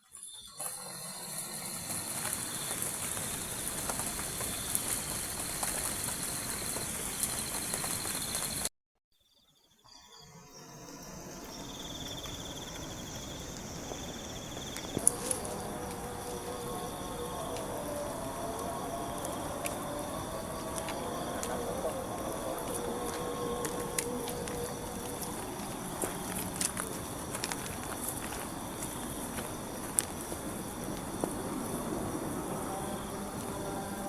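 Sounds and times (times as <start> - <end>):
insects trilling: 0.0 - 34.0
steady hiss: 0.3 - 8.7.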